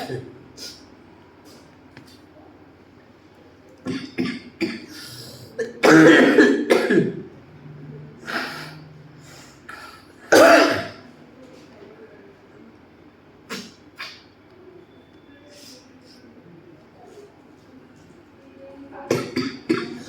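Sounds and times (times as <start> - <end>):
man coughing hard: 5.6 - 7.2, 10.3 - 11.0, 19.1 - 20.0.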